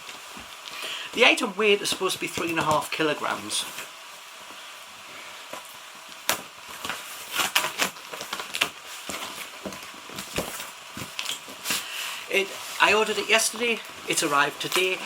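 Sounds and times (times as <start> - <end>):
cardboard box crackling: 6.3 - 15.0.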